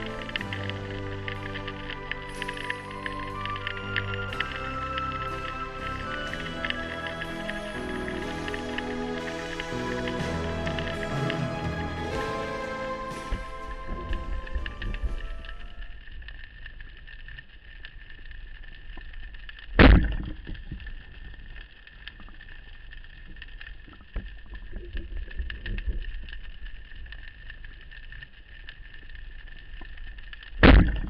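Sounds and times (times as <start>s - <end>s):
underwater high whine: 0.0s - 19.5s.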